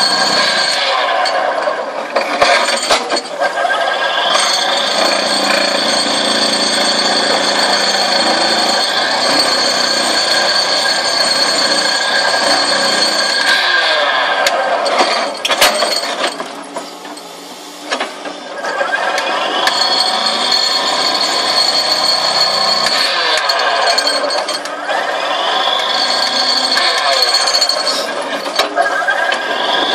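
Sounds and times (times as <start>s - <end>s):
excavator ripper clattering on rock: 2.0s - 3.5s.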